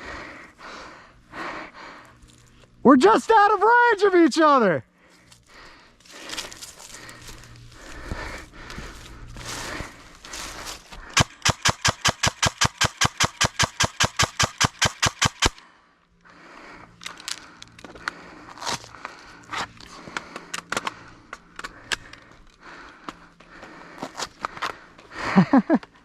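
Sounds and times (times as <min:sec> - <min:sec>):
rustling through brush: 0:05.2 - 0:11.2
airsoft gun rapid firing: 0:11.2 - 0:15.6.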